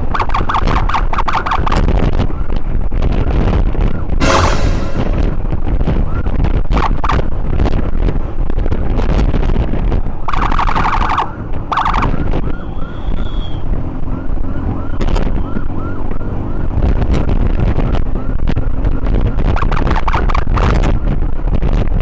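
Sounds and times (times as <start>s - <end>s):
wind: 0.0s - 22.0s
siren blasts: 4.2s - 5.6s, 10.3s - 16.7s
traffic rumble: 5.1s - 22.0s
ambulance siren yelping: 10.3s - 16.8s.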